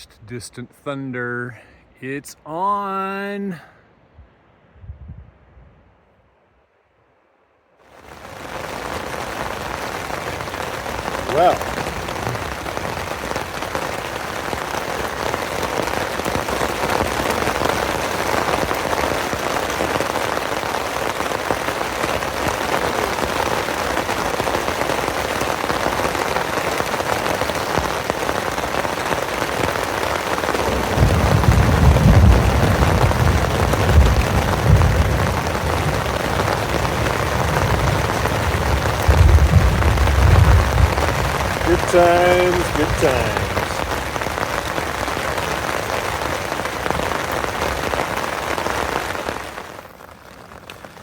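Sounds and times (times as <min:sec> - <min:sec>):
heavy rain falling: 0:07.8 - 0:51.0
thunder rumbling: 0:30.4 - 0:45.0.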